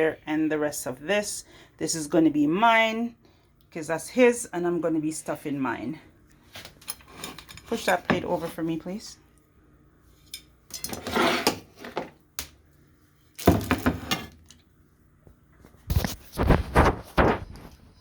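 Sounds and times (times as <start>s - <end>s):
dishes clattering on a table: 13.5s - 14.4s.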